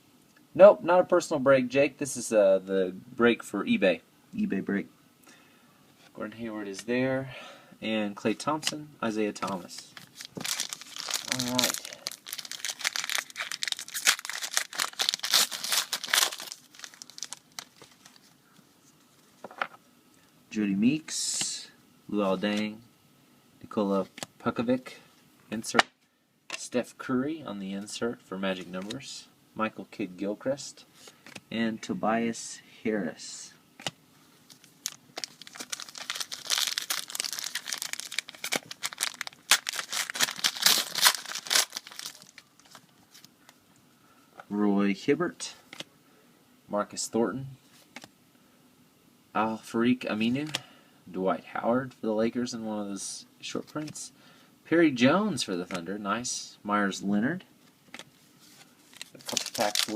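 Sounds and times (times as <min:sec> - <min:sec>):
foil wrapper tearing and crinkling: 0:10.0 - 0:18.2, 0:34.5 - 0:42.8, 0:58.9 - 0:59.9.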